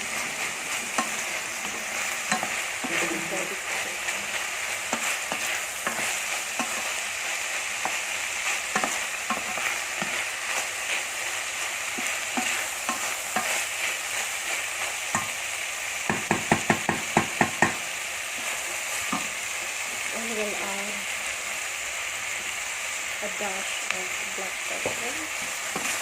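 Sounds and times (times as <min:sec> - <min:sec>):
food sizzling in a frying pan: 0:00.0 - 0:26.0
utensil clicking against pan: 0:00.9 - 0:03.0, 0:04.8 - 0:07.0, 0:08.7 - 0:10.3.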